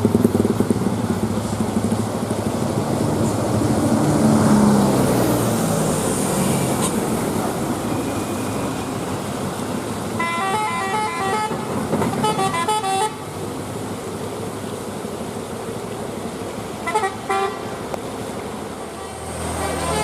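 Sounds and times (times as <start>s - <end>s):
engines and traffic noise: 0.0s - 20.0s
vehicle horn changing pitch: 10.2s - 13.2s, 16.8s - 17.7s, 19.6s - 20.0s.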